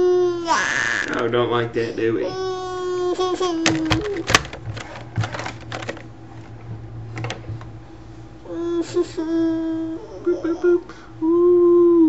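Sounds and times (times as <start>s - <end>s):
baby whining: 0.0s - 1.2s, 2.0s - 4.4s, 8.4s - 12.0s
computer keyboard keys clattering: 3.7s - 6.0s.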